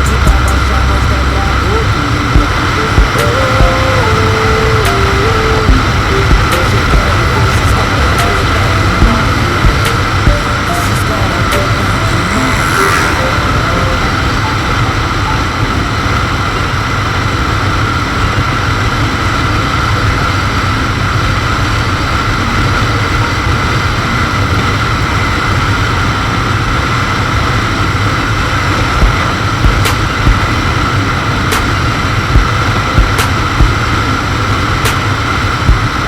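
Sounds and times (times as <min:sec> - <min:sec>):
motorcycle engine: 0:00.0 - 0:36.0.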